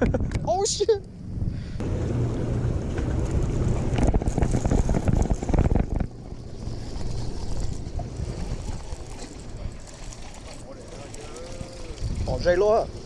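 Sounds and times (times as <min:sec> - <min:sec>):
low rumble: 0:00.0 - 0:09.8
wind buffeting microphone: 0:00.0 - 0:10.3, 0:10.9 - 0:13.0.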